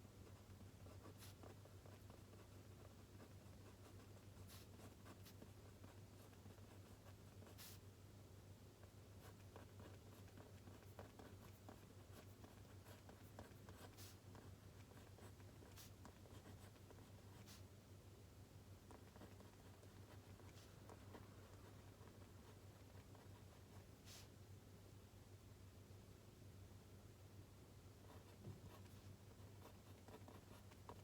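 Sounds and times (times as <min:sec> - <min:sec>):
pen scratching on paper: 0:00.3 - 0:07.8, 0:09.2 - 0:17.6, 0:18.9 - 0:24.3, 0:28.1 - 0:31.0.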